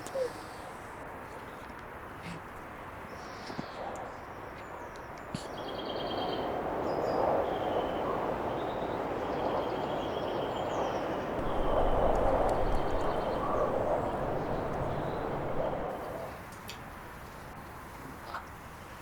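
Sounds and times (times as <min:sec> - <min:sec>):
birds trilling and chirping: 0:10.9 - 0:15.9
steady rushing noise: 0:11.4 - 0:16.0.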